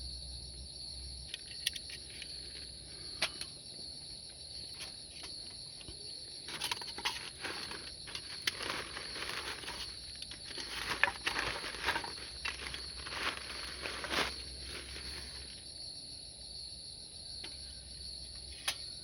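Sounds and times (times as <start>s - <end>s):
insects chirring: 0.0s - 19.0s
clicks and rustles of handling: 4.7s - 15.5s.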